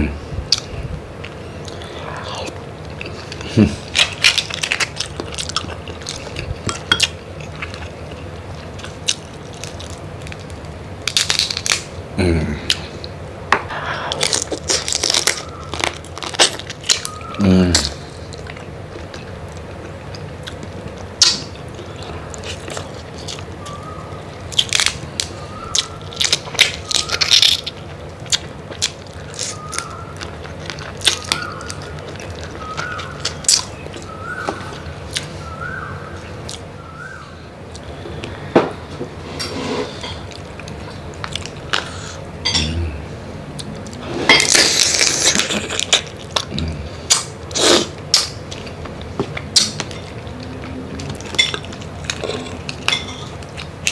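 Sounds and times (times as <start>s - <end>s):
crunching shellfish shells: 2.5s - 12.0s, 14.0s - 35.9s, 43.9s - 53.9s.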